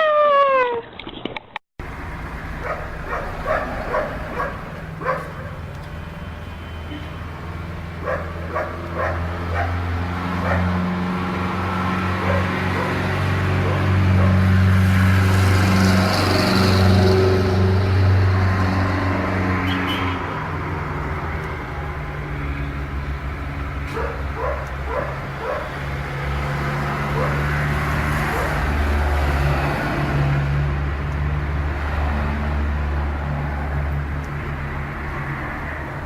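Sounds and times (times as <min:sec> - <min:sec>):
dog yipping and barking: 0:02.6 - 0:05.6, 0:08.0 - 0:09.8, 0:10.4 - 0:10.7, 0:12.2 - 0:13.0, 0:23.9 - 0:25.7, 0:27.2 - 0:27.4.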